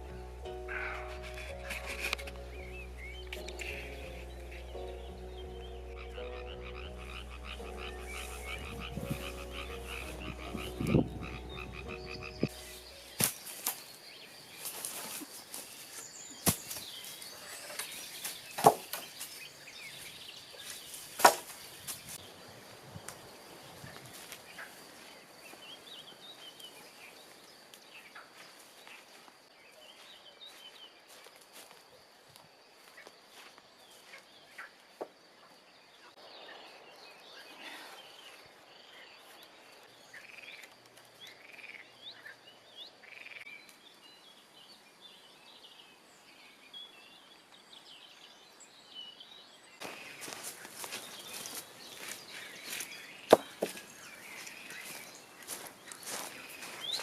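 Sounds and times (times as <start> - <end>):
background music: 0.0 - 13.7
frogs croaking: 0.0 - 44.9, 49.8 - 57.0.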